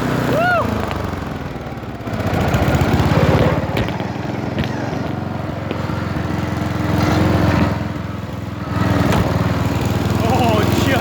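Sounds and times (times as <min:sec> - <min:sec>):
lawnmower engine running hard: 0:00.0 - 0:11.0.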